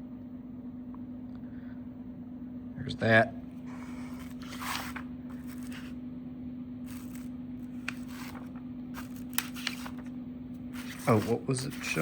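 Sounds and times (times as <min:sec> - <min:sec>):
steady low hum: 0:00.0 - 0:12.0
paper pages turning: 0:03.7 - 0:06.0, 0:06.9 - 0:12.0.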